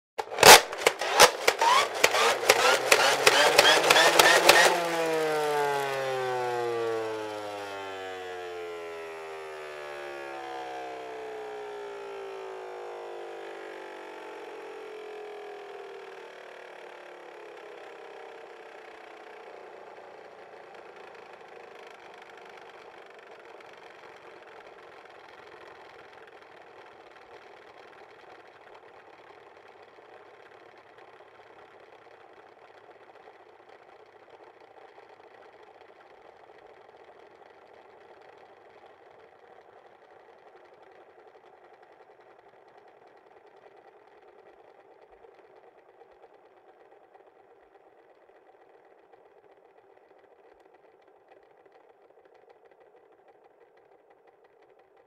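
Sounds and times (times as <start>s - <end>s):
toy pistol clicks: 0.2s - 5.0s
whirring tone sliding down: 0.2s - 17.5s.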